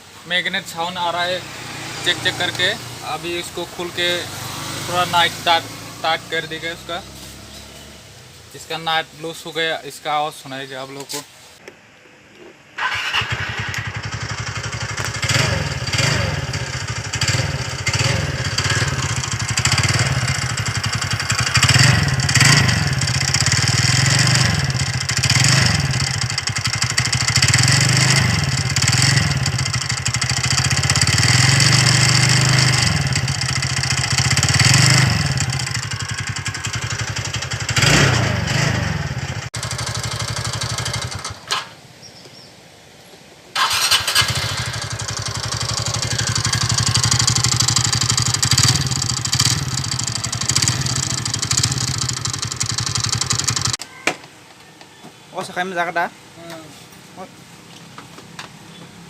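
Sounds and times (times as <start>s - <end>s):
scooter engine throttle blips: 12.8s - 38.9s, 43.6s - 53.8s
engine rattling noise: 12.8s - 41.7s, 43.6s - 53.8s.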